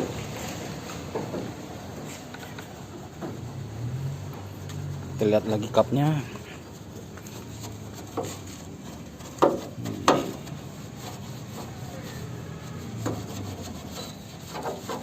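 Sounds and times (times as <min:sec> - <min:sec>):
rubbing and scraping: 0:05.2 - 0:15.0
sharp knocks: 0:09.4 - 0:10.4.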